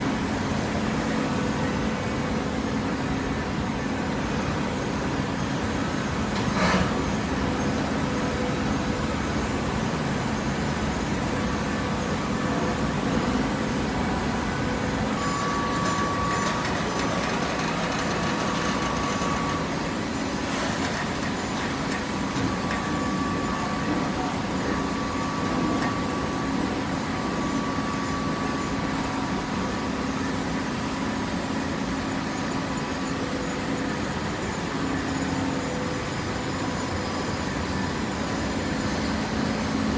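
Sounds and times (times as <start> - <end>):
hydraulic pump motor humming: 12.2 - 27.2.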